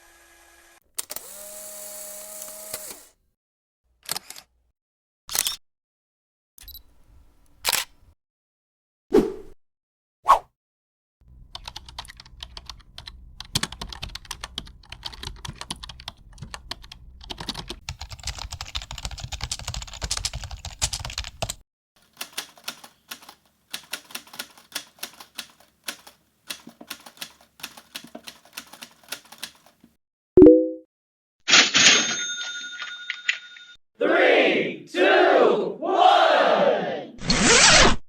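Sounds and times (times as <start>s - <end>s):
computer keyboard typing: 11.5s - 29.8s.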